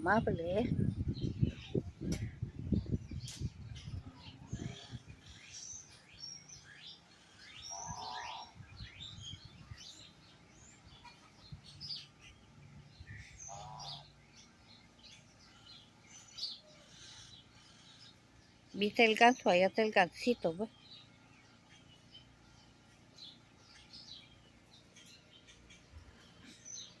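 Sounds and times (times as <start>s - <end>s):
birds chirping: 0.0s - 27.0s
buzzy bird calls: 0.1s - 19.6s.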